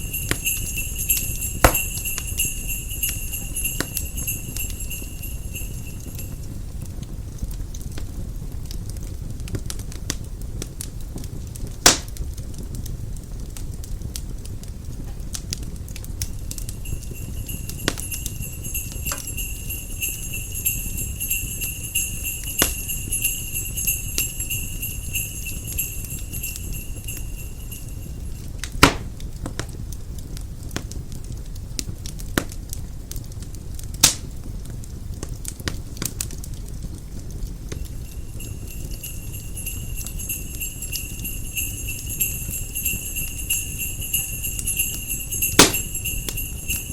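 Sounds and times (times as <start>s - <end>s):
sleigh bells jingling: 0.0s - 7.0s, 16.2s - 28.6s, 37.5s - 46.9s
fire crackling and popping: 0.0s - 46.9s.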